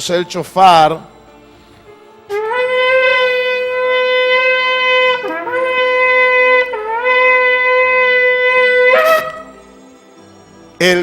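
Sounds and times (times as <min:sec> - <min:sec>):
shofar blasts: 0:02.3 - 0:09.7.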